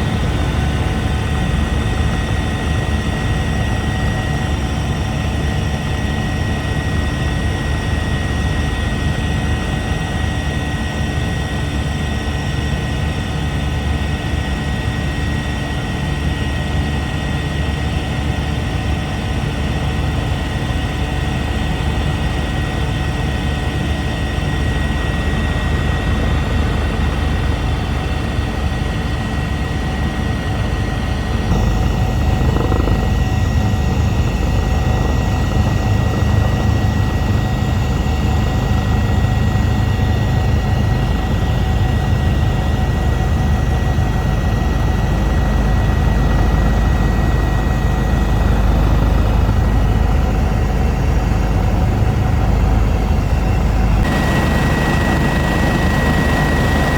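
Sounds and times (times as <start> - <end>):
helicopter rotor and engine rumble: 0.0 - 56.9
thin constant whine: 31.5 - 56.9.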